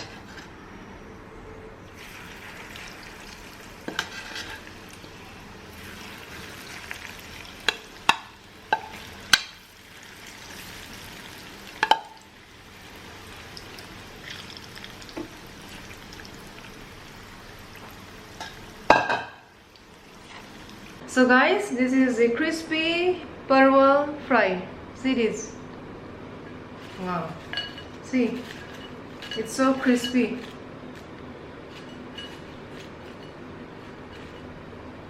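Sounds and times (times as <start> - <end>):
vegetables sizzling in hot oil: 1.9 - 21.0.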